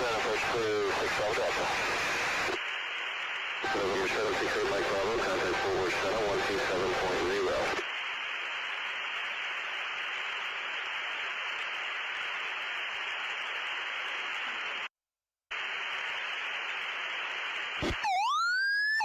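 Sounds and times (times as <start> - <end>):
radio intercom hiss: 0.0 - 2.6, 3.6 - 7.8.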